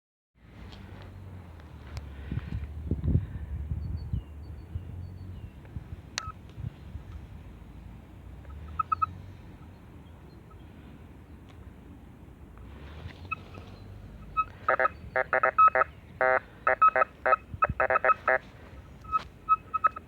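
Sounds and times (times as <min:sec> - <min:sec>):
metal detector beeps: 0:08.7 - 0:09.1, 0:13.3 - 0:18.4, 0:19.0 - 0:20.0.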